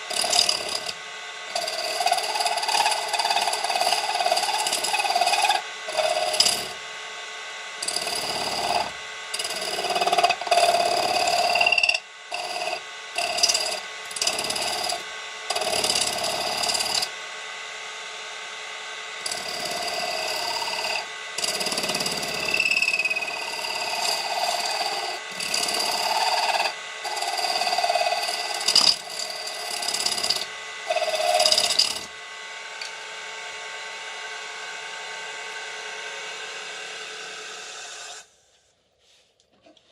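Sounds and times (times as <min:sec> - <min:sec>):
lathe motor running: 0:00.0 - 0:06.9, 0:07.7 - 0:17.6, 0:19.2 - 0:38.2
tool scraping spinning metal: 0:01.5 - 0:06.8, 0:19.3 - 0:32.1.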